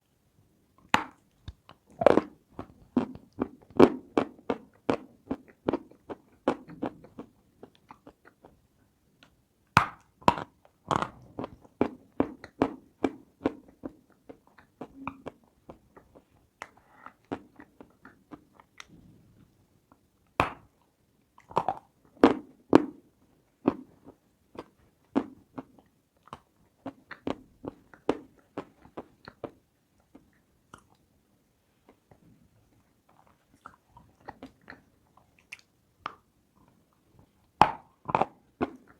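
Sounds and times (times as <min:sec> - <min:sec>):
crunchy eating and chewing: 0:10.3 - 0:19.2.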